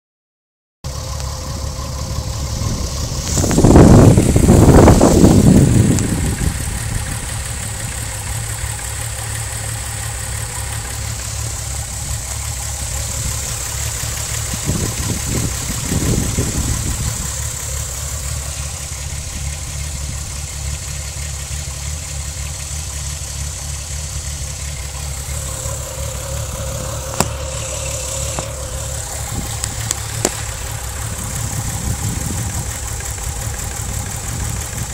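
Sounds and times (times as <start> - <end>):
car engine idling roughly: 0.8 - 34.9
sharp click: 26.8 - 28.6.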